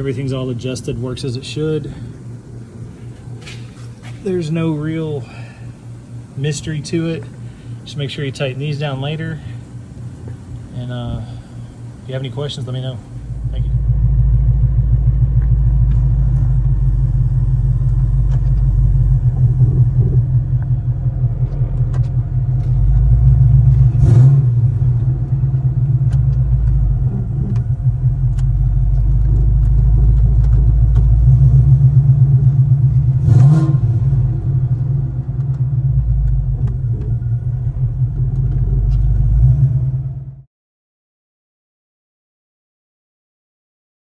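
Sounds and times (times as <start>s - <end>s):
car engine rumbling: 0.0s - 40.5s.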